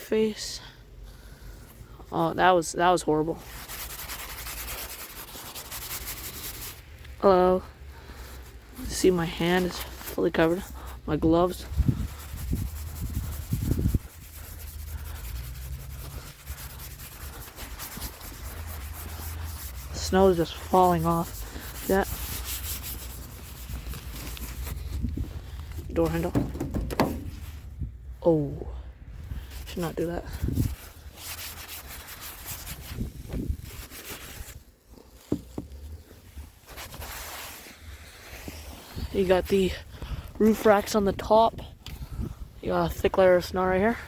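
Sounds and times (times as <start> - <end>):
gloved hand brushing snow off window: 1.8 - 28.4, 29.2 - 44.0
bump: 25.7 - 27.8
soft thumps: 26.2 - 27.7.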